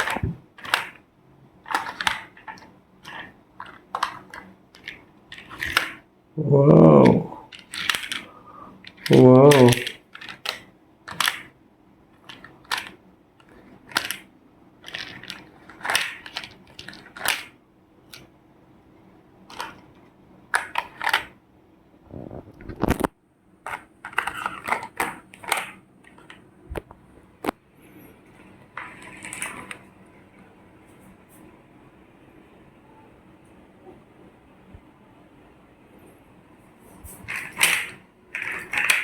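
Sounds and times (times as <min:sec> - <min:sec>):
plastic toys clicking and knocking: 0:00.0 - 0:01.0, 0:01.6 - 0:06.0, 0:07.0 - 0:18.3, 0:19.5 - 0:21.4, 0:23.6 - 0:26.4, 0:28.7 - 0:29.8, 0:37.3 - 0:39.0
plastic toys scraping and rattling: 0:00.0 - 0:01.0, 0:01.6 - 0:06.0, 0:07.0 - 0:11.5, 0:12.1 - 0:18.3, 0:19.5 - 0:21.4, 0:23.6 - 0:26.4, 0:28.3 - 0:29.9, 0:37.1 - 0:39.0.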